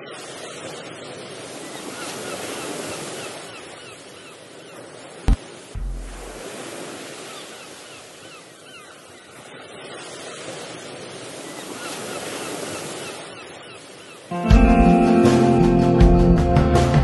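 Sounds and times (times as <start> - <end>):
sea waves washing on shore: 0.0 - 15.5
low thump: 5.3 - 6.4.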